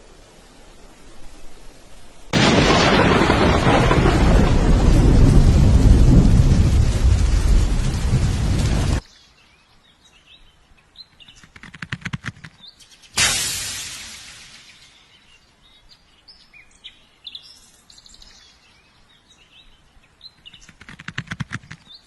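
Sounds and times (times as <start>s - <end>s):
heavy rain: 0.0s - 9.2s
low rumbling: 2.4s - 9.0s
sharp clicks: 11.4s - 12.6s, 20.4s - 22.0s.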